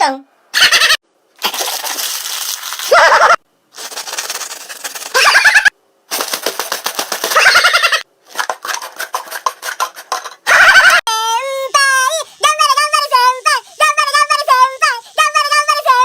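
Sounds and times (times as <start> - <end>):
fast clicks or crackles: 1.4 - 3.0, 3.7 - 10.8
high-pitched voice cries: 2.9 - 3.4, 7.4 - 8.0, 10.5 - 13.6.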